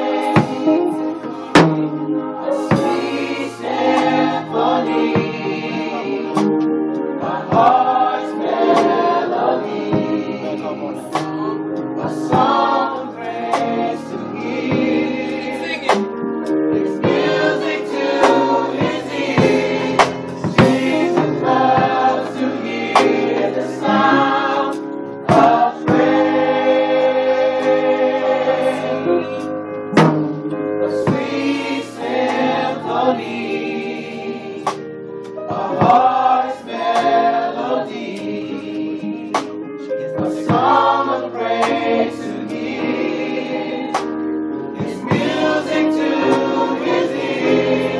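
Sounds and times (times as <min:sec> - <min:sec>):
gospel choir singing in harmony: 0:00.0 - 0:47.9
sharp percussive hits: 0:01.6 - 0:02.1, 0:29.9 - 0:31.2.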